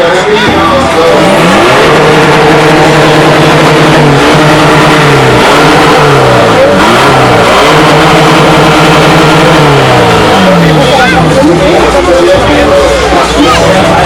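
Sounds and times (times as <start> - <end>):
car engine revving: 0.0 - 14.0.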